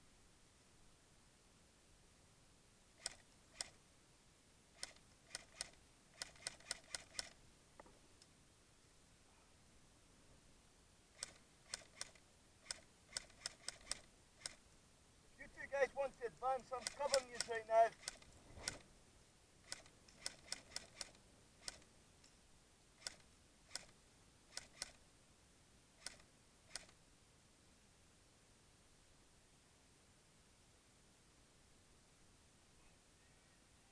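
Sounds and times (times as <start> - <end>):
airsoft gun shots: 16.1 - 18.8.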